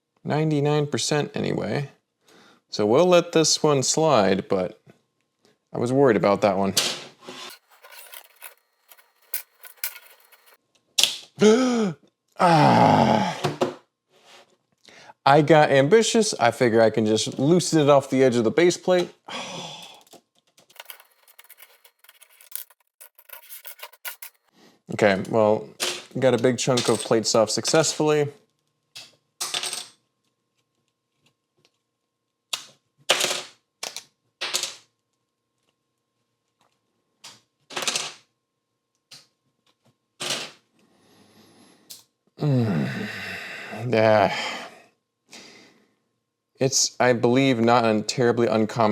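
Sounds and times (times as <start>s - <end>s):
plastic scraping on plastic: 20.7s - 24.5s
plastic bricks snapping and clicking: 32.5s - 34.6s.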